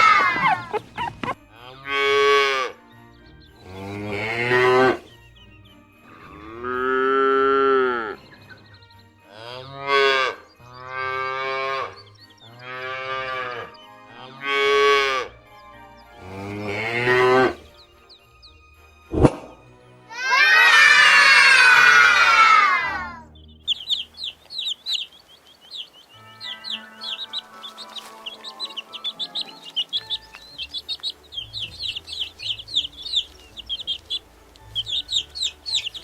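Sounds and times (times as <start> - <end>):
cattle mooing: 3.7 - 5.0, 6.1 - 8.2, 9.3 - 12.0, 16.2 - 17.6.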